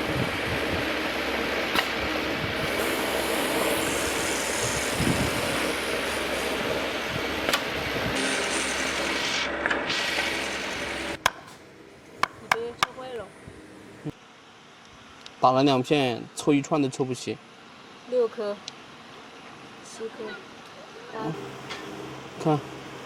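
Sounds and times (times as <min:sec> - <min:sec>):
power tool cutting wood: 0:00.0 - 0:11.4.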